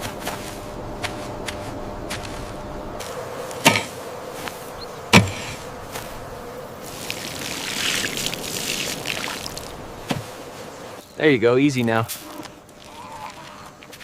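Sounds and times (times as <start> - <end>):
rustling hiss: 0.0 - 12.8
faint steady hum: 0.0 - 14.0
sharp knocks: 3.6 - 3.9, 5.1 - 5.6.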